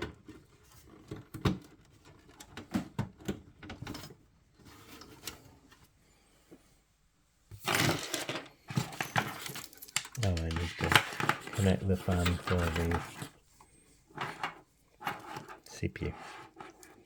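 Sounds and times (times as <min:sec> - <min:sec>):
rustling scrape: 0:07.6 - 0:17.0.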